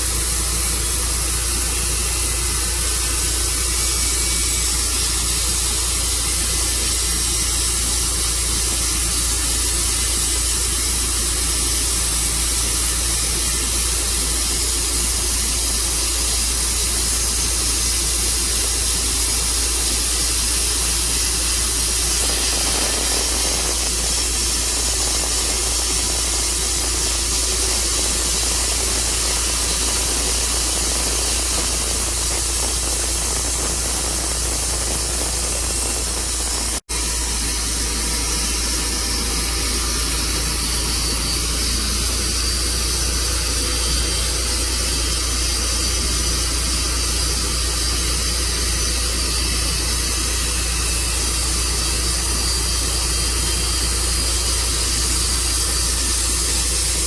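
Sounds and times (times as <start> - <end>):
sawmill running: 0.0 - 57.0.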